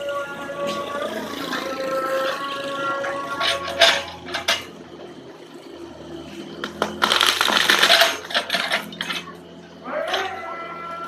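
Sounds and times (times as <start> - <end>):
tree wood cracking and crashing: 6.8 - 8.0.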